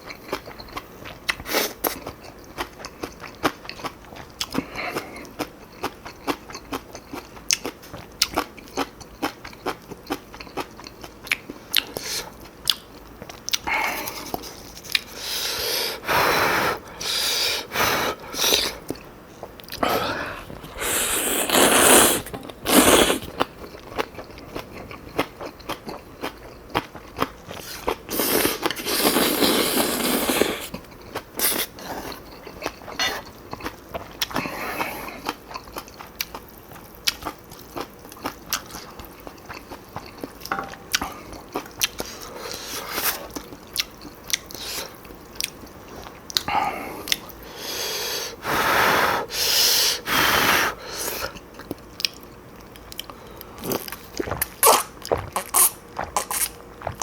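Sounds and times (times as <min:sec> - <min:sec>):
chewing and crunching: 0:00.0 - 0:15.2, 0:22.3 - 0:47.4, 0:51.3 - 0:57.0
noisy noodle slurps: 0:19.8 - 0:23.4, 0:27.6 - 0:30.7.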